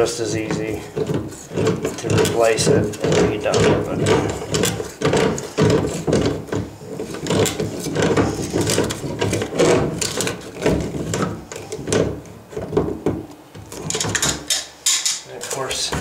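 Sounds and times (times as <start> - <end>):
tool scraping on valve: 0.0 - 11.8.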